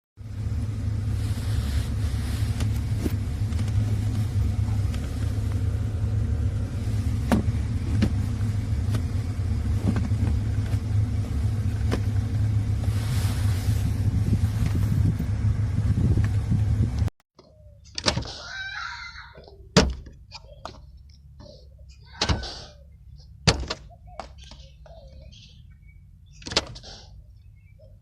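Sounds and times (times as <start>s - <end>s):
car rumble from inside cabin: 0.2s - 28.0s.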